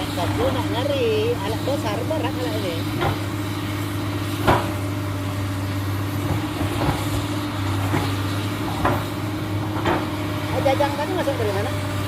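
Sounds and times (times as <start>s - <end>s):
excavator diesel engine running: 0.0s - 12.0s
sharp knocks: 4.4s - 4.8s.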